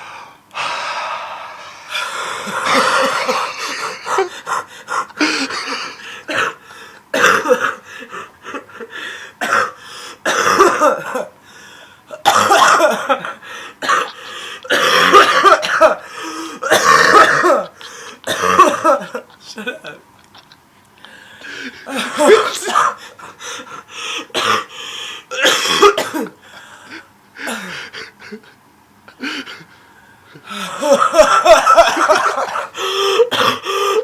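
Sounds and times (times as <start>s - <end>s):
person coughing hard: 1.5s - 8.6s, 9.4s - 11.3s, 12.2s - 19.2s, 21.8s - 23.1s, 24.3s - 24.7s, 25.3s - 26.4s, 30.7s - 34.0s.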